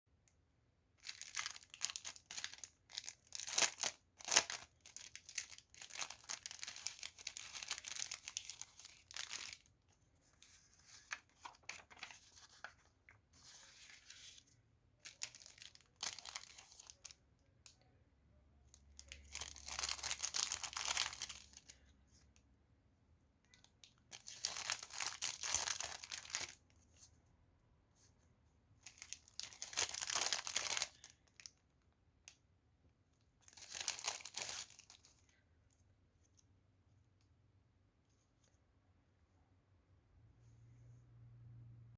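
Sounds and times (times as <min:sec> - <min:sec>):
packaging tearing and crinkling: 0:01.0 - 0:09.7, 0:19.2 - 0:21.6, 0:29.0 - 0:31.1, 0:33.5 - 0:35.0.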